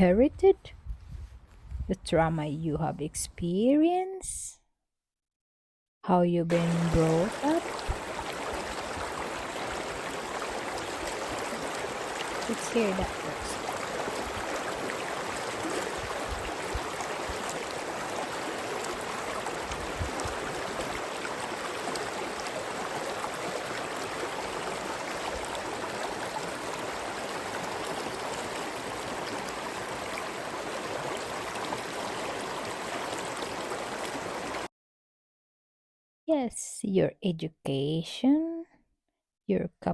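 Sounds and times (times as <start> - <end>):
stream flowing over rocks: 6.5 - 34.7.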